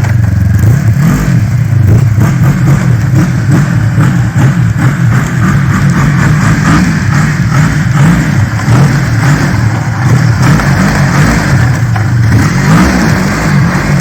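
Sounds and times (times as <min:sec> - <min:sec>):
snowmobile engine running: 0:00.0 - 0:14.0.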